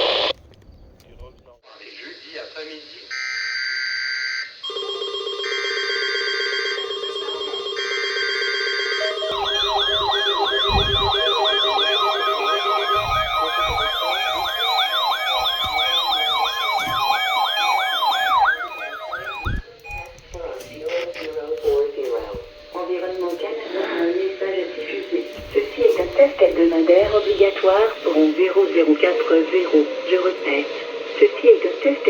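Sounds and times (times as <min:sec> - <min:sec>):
pulsed alarm beeps: 0:03.1 - 0:31.8
sweeping siren-like warbles: 0:03.1 - 0:32.0
steady low tone: 0:09.0 - 0:29.6.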